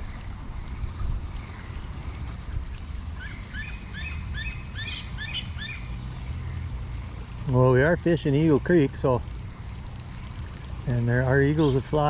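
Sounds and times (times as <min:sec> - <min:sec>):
low background rumble: 0:00.0 - 0:12.0
eagle chirping calls: 0:02.3 - 0:07.4.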